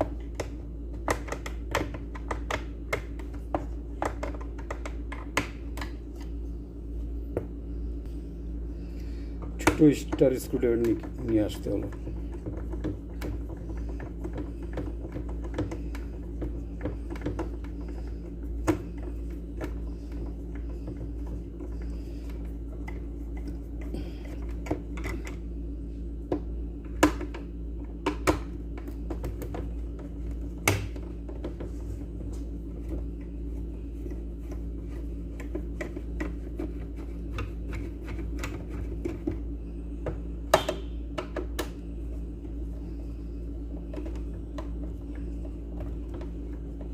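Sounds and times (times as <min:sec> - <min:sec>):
steady low hum: 0:00.0 - 0:46.9.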